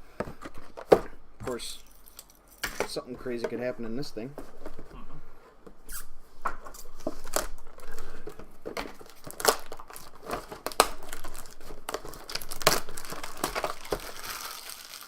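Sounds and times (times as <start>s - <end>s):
wrapper crinkling and tearing: 6.7s - 15.0s.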